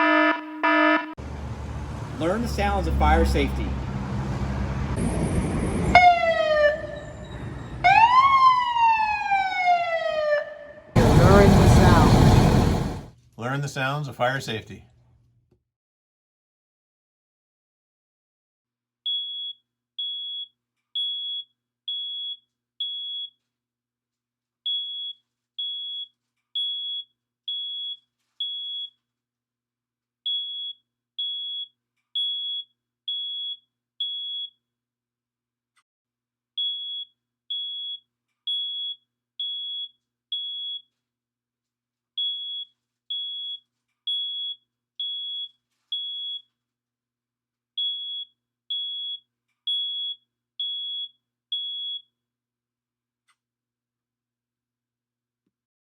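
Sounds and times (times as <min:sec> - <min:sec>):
smoke alarm beeping: 0:00.0 - 0:01.1.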